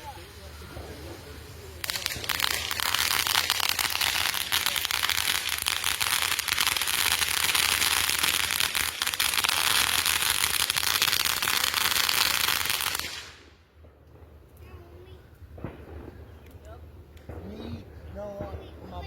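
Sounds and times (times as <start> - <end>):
firework crackling: 0.0 - 17.5.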